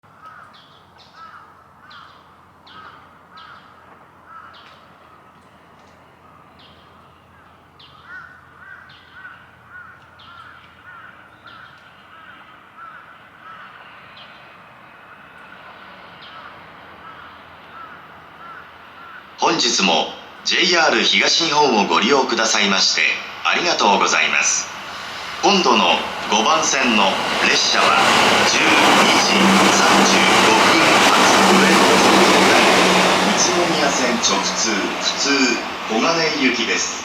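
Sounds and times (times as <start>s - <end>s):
crows cawing: 0.2s - 5.0s, 7.3s - 14.0s, 15.1s - 19.4s.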